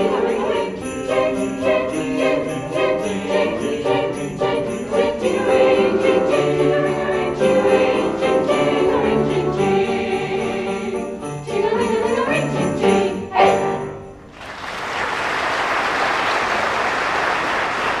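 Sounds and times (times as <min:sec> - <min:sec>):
sleigh bells jingling: 0:00.0 - 0:14.2
audience applause: 0:14.3 - 0:18.0.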